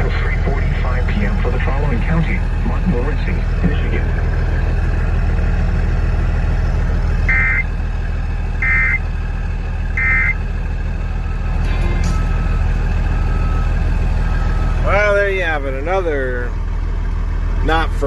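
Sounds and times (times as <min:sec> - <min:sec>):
diesel engine idling: 0:00.0 - 0:18.0
data-tone bursts: 0:07.3 - 0:07.6, 0:10.0 - 0:10.3.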